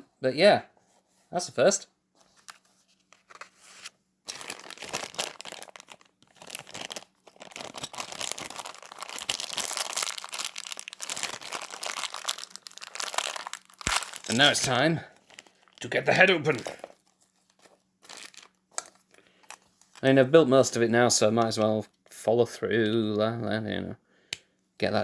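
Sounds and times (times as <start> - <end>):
plastic bag crinkling: 4.3 - 21.6.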